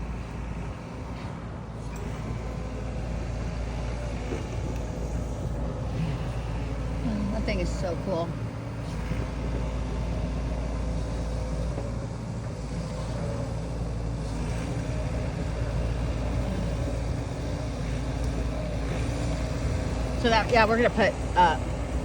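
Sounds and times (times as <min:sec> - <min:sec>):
excavator working: 0:00.0 - 0:22.0
tractor engine running: 0:00.0 - 0:22.0.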